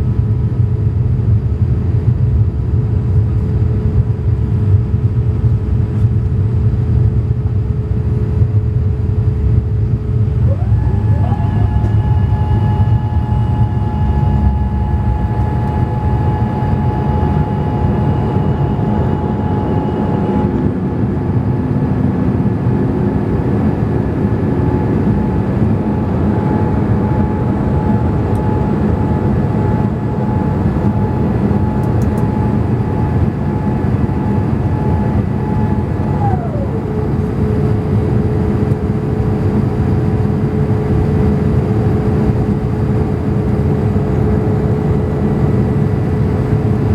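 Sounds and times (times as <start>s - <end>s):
rumble of engines and airflow: 0.0s - 46.9s
hydraulic whine: 10.2s - 22.5s, 24.3s - 39.4s.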